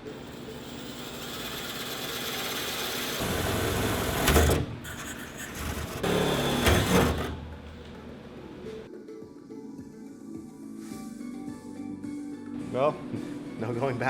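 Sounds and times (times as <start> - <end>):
electric drill boring through metal: 0.0 - 7.4.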